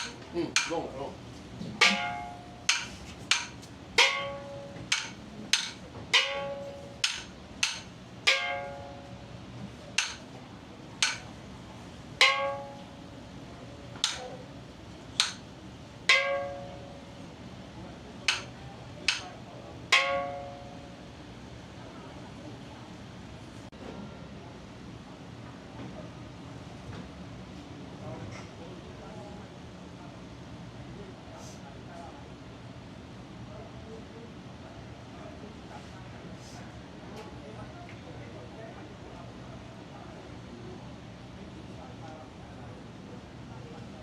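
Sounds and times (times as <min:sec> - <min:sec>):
struck percussion ringing: 0:01.8 - 0:09.2, 0:12.2 - 0:13.2, 0:16.1 - 0:17.2, 0:19.9 - 0:20.9.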